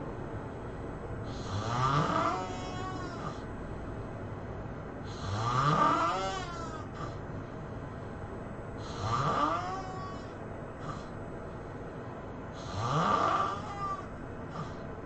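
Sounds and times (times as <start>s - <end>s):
person snoring: 1.3s - 3.5s, 5.1s - 7.2s, 8.8s - 11.1s, 12.6s - 14.8s.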